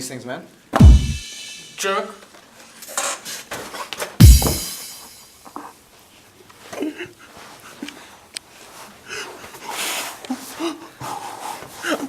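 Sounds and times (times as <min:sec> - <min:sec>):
electronic drum hit: 0:00.8 - 0:01.8, 0:04.2 - 0:05.2.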